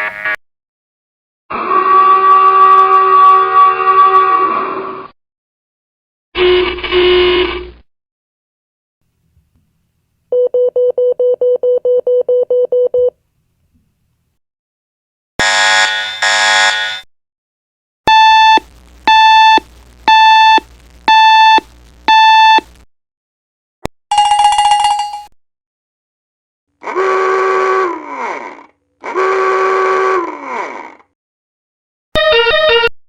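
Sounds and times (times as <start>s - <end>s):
harsh buzzer: 6.4s - 7.7s, 15.4s - 17.1s, 18.1s - 22.7s
fast electronic beeping: 18.1s - 22.7s.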